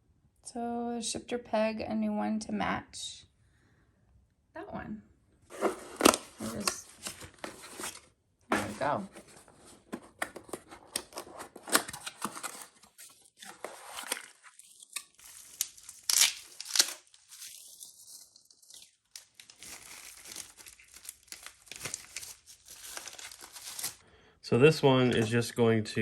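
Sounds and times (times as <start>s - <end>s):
packaging rustling: 5.5s - 24.0s.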